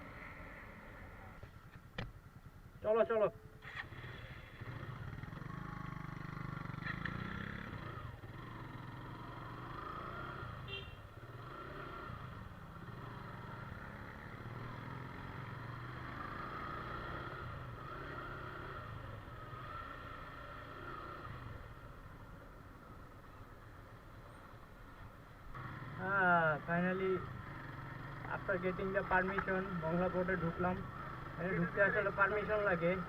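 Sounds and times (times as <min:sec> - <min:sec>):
motorcycle engine running: 0:01.0 - 0:21.8.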